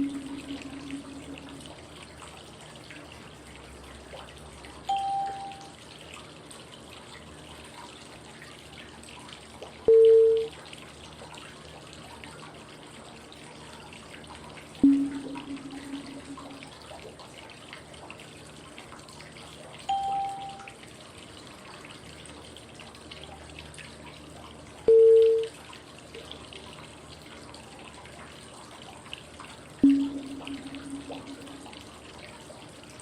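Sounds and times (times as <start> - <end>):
short cue tones: 29.8 - 31.8.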